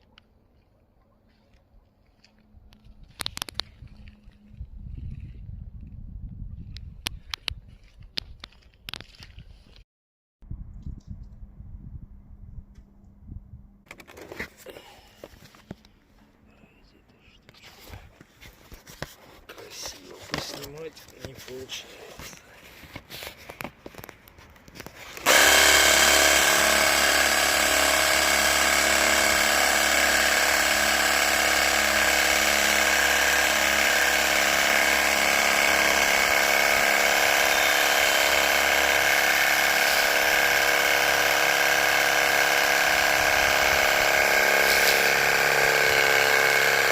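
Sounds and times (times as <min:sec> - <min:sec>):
small electric motor whining: 0:25.0 - 0:46.9.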